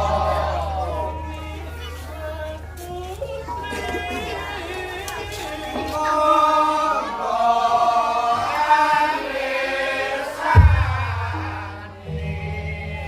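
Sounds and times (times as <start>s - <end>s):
gamelan music: 0.0s - 6.1s, 10.6s - 13.0s
voices singing: 0.0s - 13.0s.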